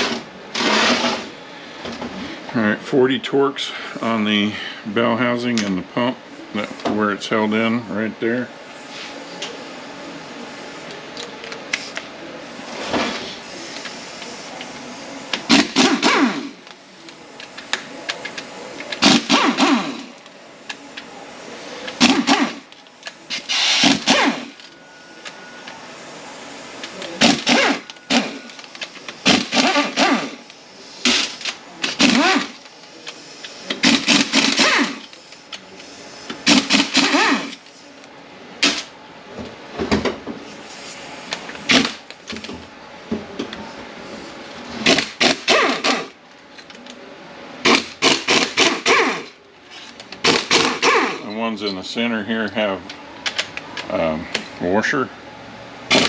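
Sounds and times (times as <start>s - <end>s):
power tool whirring in bursts: 19.0s - 20.1s, 23.4s - 24.6s, 27.2s - 28.5s, 29.2s - 31.3s, 31.9s - 32.6s, 33.8s - 35.0s, 36.4s - 37.6s, 47.6s - 49.4s, 50.2s - 51.2s.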